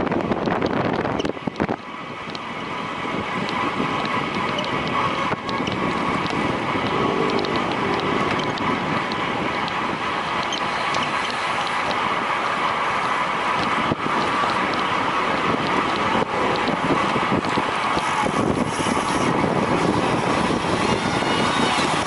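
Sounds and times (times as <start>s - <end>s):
wind rush on microphone: 0.0s - 22.0s
faint ticks: 0.3s - 2.5s, 3.4s - 14.9s.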